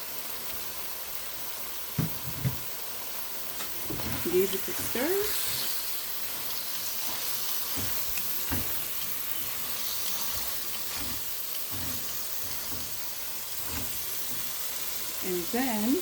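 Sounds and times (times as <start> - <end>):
food sizzling in a hot pan: 0.0 - 16.0.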